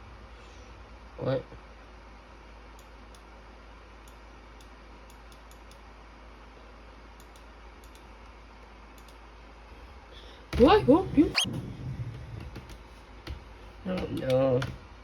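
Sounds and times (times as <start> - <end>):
computer mouse clicks: 4.0 - 5.8, 7.2 - 8.1, 9.0 - 9.2.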